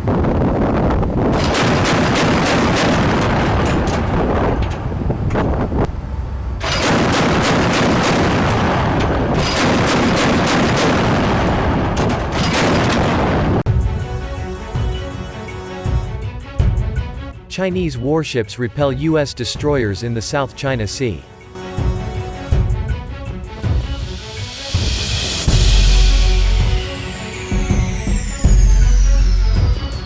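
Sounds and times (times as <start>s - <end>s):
gunfire shots: 1.4s - 3.6s, 6.6s - 13.4s
loud rumble: 21.5s - 30.0s.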